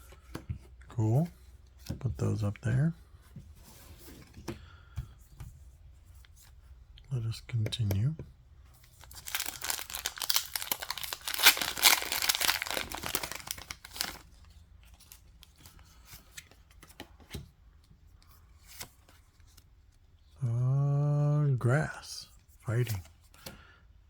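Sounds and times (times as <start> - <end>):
foil wrapper tearing and crinkling: 9.0 - 14.2.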